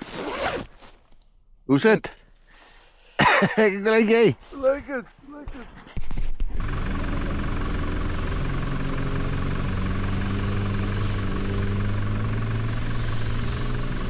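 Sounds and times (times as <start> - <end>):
vehicle engine running: 6.4 - 14.0.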